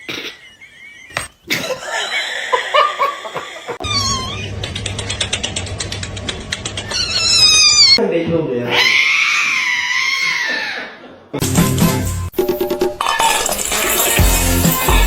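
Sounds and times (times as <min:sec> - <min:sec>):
cat meowing and yowling: 0:03.8 - 0:04.5, 0:06.9 - 0:08.0, 0:08.7 - 0:10.7
background music: 0:11.4 - 0:15.0.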